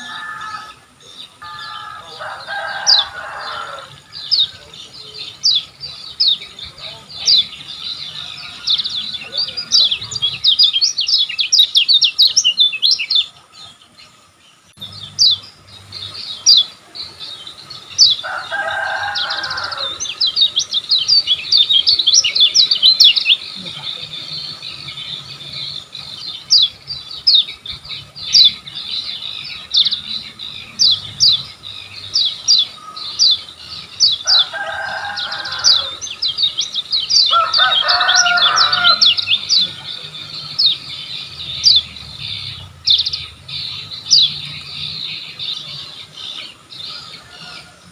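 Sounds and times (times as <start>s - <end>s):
bird twittering song: 0.0s - 47.9s
harsh bird calls: 0.0s - 47.9s.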